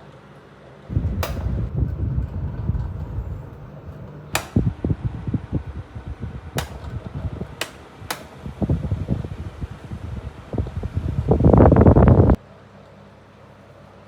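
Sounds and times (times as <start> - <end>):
box fan running: 0.0 - 12.5
air buffeting microphone: 0.9 - 12.4
sharp clicks: 4.0 - 4.8, 6.5 - 8.4.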